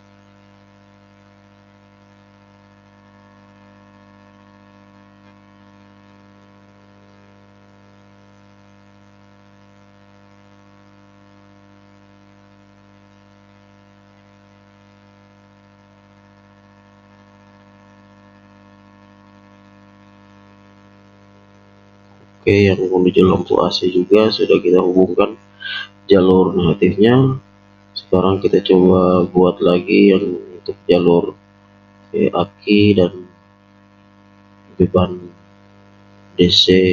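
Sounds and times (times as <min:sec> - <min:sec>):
low electrical hum: 0:12.6 - 0:36.9
faint hiss: 0:22.2 - 0:31.4, 0:32.1 - 0:33.3, 0:36.4 - 0:36.9.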